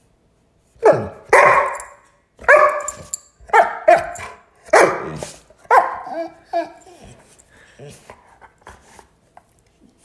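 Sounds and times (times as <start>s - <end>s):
dog barking: 0.8s - 6.2s.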